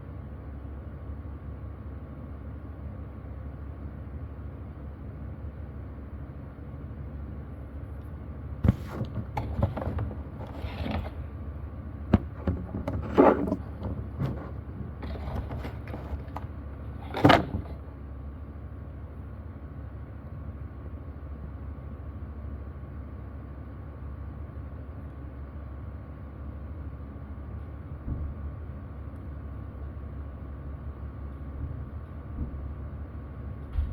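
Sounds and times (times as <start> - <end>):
cardboard packaging clicks and knocks: 8.6 - 11.3, 12.1 - 17.8.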